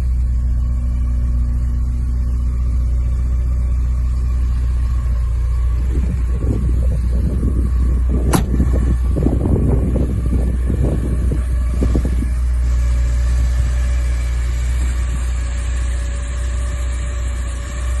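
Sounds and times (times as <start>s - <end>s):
car engine rumbling: 0.0s - 18.0s
sharp click: 8.3s - 8.6s.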